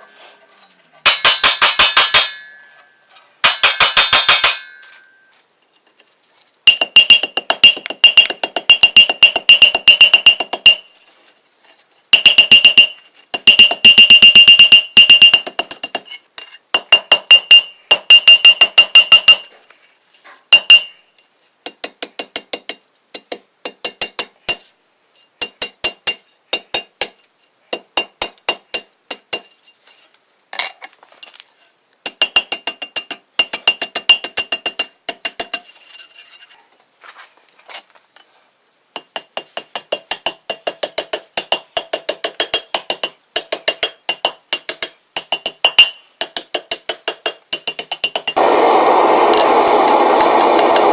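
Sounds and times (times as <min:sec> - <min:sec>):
hammer striking steel on anvil: 0:01.0 - 0:05.3, 0:06.7 - 0:10.8, 0:16.8 - 0:19.5.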